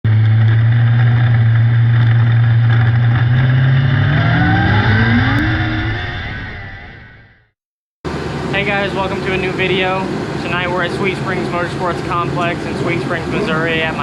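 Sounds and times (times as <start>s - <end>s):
race car engine revving: 0.1s - 6.7s.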